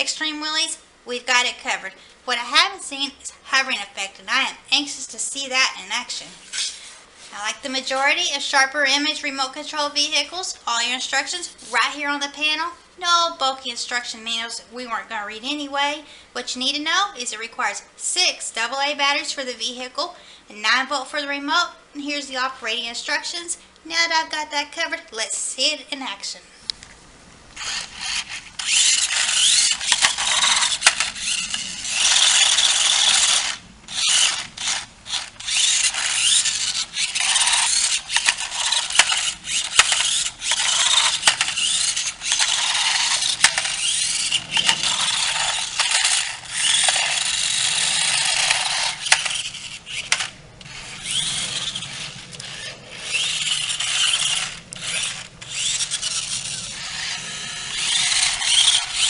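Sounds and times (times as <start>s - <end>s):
toy car motors whirring: 27.6s - 59.0s.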